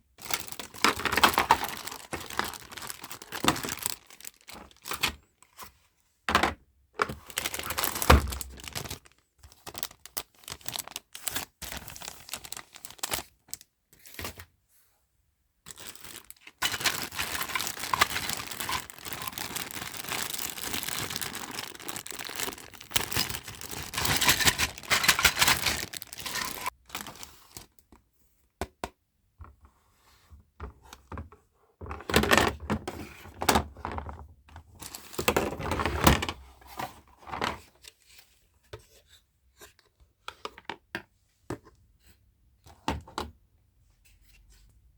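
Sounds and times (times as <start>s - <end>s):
packaging crinkling and tearing: 0.2s - 5.2s, 7.1s - 13.6s, 15.7s - 27.7s.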